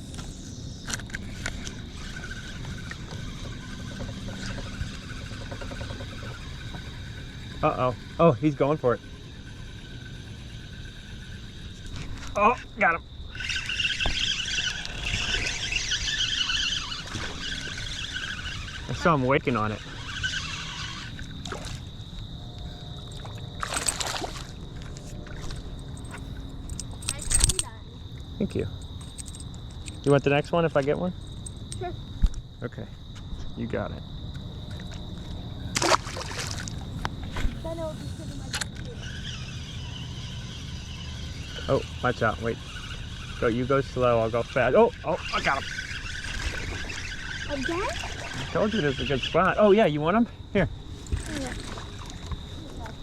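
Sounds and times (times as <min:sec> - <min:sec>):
low steady rumble: 0:00.0 - 0:32.9
high insect tone: 0:00.0 - 0:53.0
thin high tone: 0:12.3 - 0:30.7
water sloshing: 0:13.3 - 0:30.1, 0:34.4 - 0:42.1, 0:44.9 - 0:49.5, 0:50.8 - 0:53.0
water splash: 0:23.1 - 0:25.6, 0:35.7 - 0:37.4.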